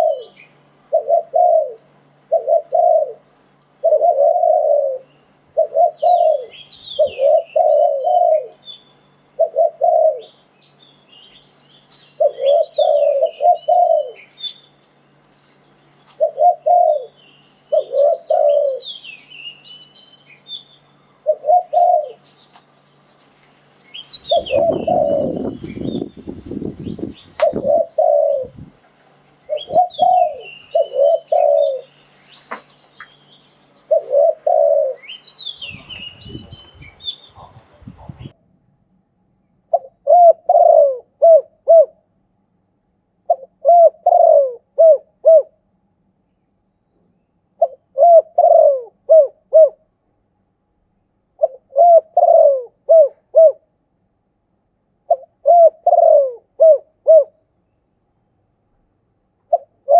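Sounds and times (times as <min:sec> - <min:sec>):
dove cooing: 0:00.0 - 0:08.6, 0:09.4 - 0:10.4, 0:12.1 - 0:14.3, 0:16.1 - 0:19.0, 0:21.2 - 0:22.2, 0:23.9 - 0:28.8, 0:29.4 - 0:32.6, 0:33.8 - 0:38.3, 0:39.7 - 0:42.0, 0:43.3 - 0:45.6, 0:47.6 - 0:49.9, 0:51.4 - 0:53.7, 0:55.1 - 0:57.4, 0:59.5 - 0:59.9
small birds chirping: 0:00.0 - 0:28.7, 0:29.3 - 0:38.3
rough rustling: 0:22.2 - 0:31.5, 0:32.1 - 0:38.3.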